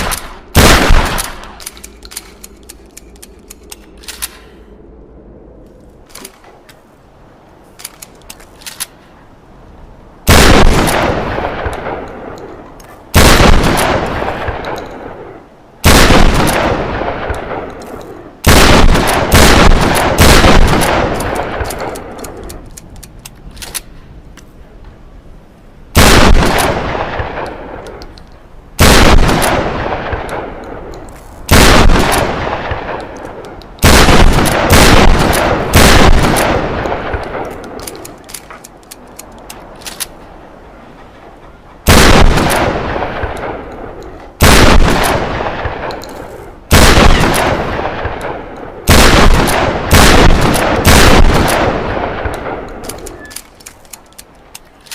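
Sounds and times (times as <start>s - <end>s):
shotgun blasts with echo: 0.0s - 1.7s, 10.3s - 12.4s, 13.1s - 17.8s, 18.4s - 22.2s, 26.0s - 27.9s, 28.8s - 30.9s, 31.5s - 33.2s, 33.8s - 38.1s, 41.9s - 43.8s, 44.4s - 46.0s, 46.6s - 53.3s
faint clicks: 36.4s - 41.8s.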